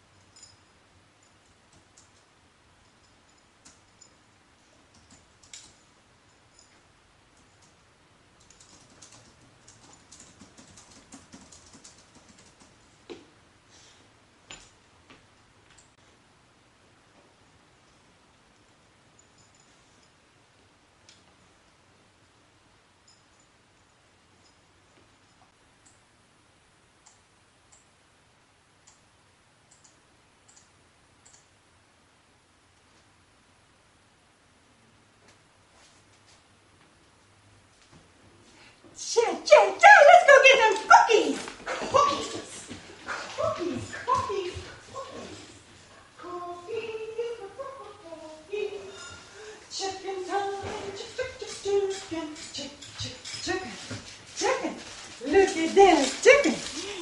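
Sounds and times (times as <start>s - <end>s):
typing on computer keyboard: 8.4s - 12.8s.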